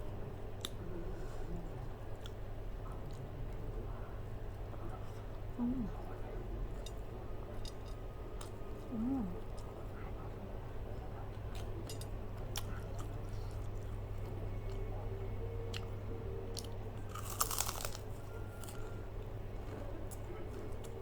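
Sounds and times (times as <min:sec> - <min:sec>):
person chewing crunchy food: 0:16.6 - 0:18.9.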